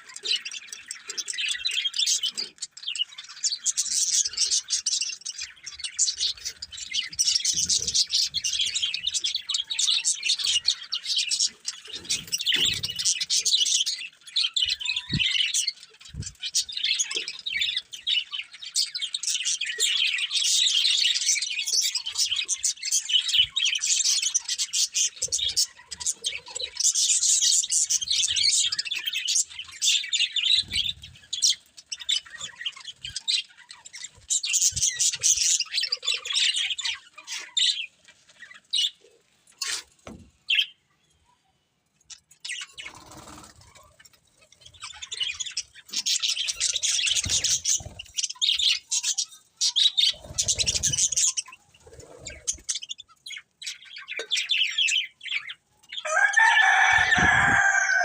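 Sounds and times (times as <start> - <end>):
budgerigars chattering and chirping: 0.0 - 40.9, 42.1 - 58.0.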